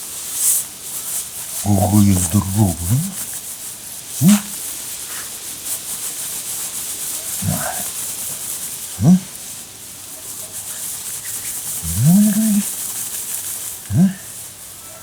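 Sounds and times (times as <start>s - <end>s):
grunt-like vocal sounds: 1.6s - 3.3s, 4.2s - 4.6s, 7.4s - 7.9s, 9.0s - 9.3s, 11.8s - 12.7s, 13.9s - 14.3s.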